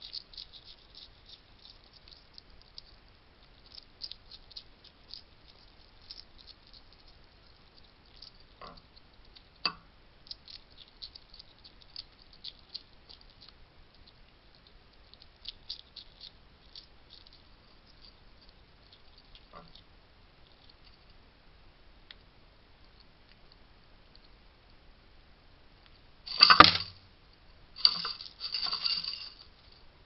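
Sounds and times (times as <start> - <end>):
hedgehogs crunching dry food: 0.0 - 21.2, 27.8 - 29.8.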